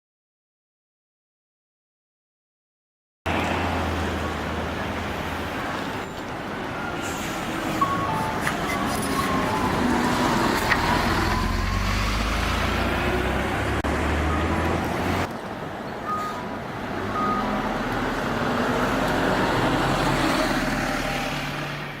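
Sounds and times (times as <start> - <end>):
bus engine running: 3.3 - 22.0
traffic noise: 3.3 - 22.0
turn signal warning chime: 7.7 - 10.4, 14.2 - 14.7, 16.0 - 16.5, 17.1 - 17.7.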